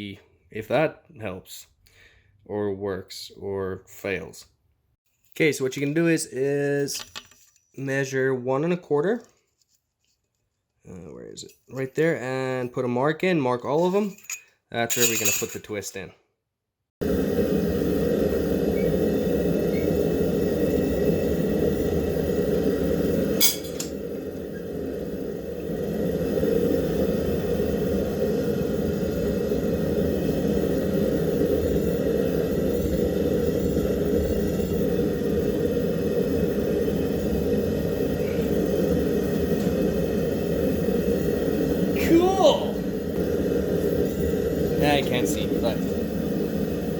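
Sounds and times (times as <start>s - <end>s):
forge roaring: 17.0s - 46.9s.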